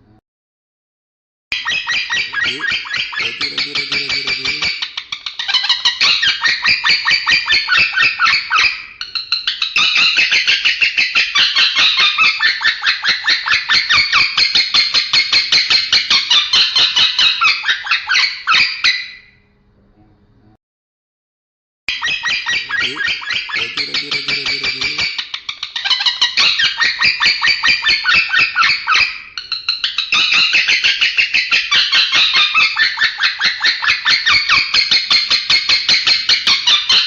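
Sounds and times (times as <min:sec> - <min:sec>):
lovebird chirping rapidly: 0:01.6 - 0:11.0, 0:21.9 - 0:31.3.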